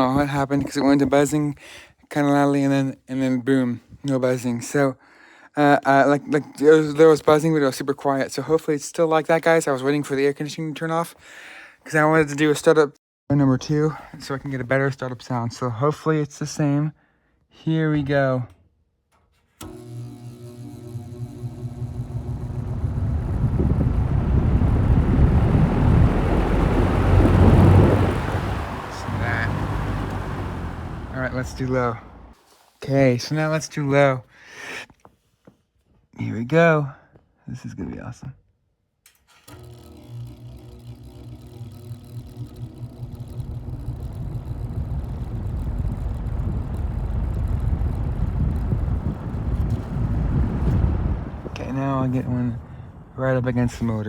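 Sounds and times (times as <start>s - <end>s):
box fan starting up: 19.6s - 32.4s, 39.4s - 53.9s.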